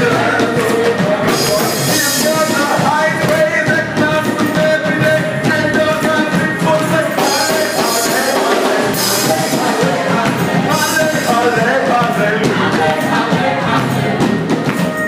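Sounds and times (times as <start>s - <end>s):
vocal group singing gospel: 0.0s - 14.9s
band accompaniment: 0.0s - 15.0s
steady drum beat: 0.0s - 15.0s.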